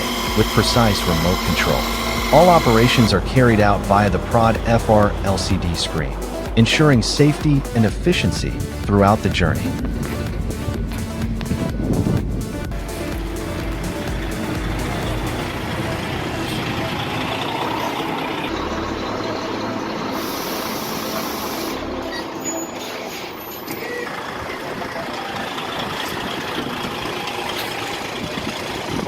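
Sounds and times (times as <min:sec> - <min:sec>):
heavy trucks running: 0:00.0 - 0:29.0
air hiss: 0:20.1 - 0:22.0.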